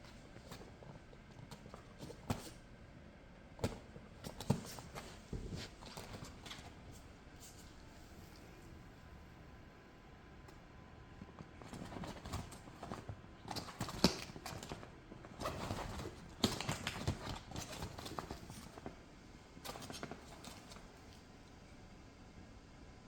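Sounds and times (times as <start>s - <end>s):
dog moving on vinyl pool float: 3.6s - 7.9s, 11.3s - 21.2s.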